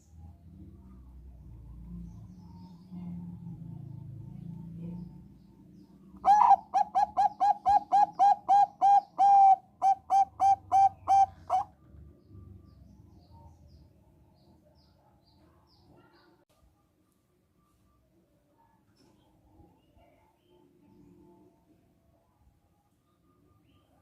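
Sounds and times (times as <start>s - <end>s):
dove cooing: 6.2s - 11.7s.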